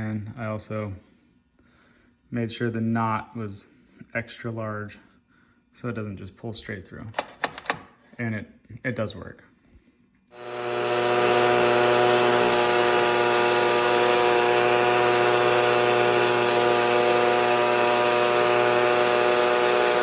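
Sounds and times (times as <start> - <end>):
leaf blower engine running: 10.4 - 20.0.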